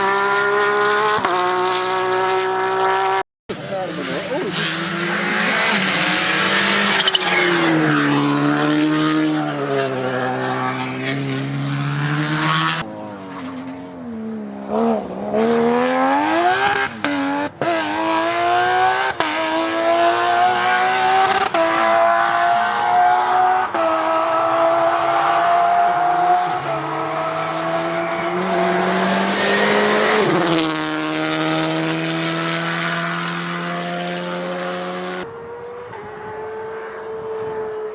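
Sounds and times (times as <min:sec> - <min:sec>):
car engine revving: 0:00.0 - 0:37.9
rally car accelerating hard: 0:00.0 - 0:37.9.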